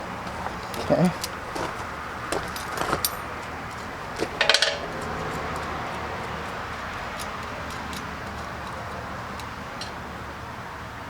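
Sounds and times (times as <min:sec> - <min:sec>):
metal parts clinking: 0:00.2 - 0:05.7.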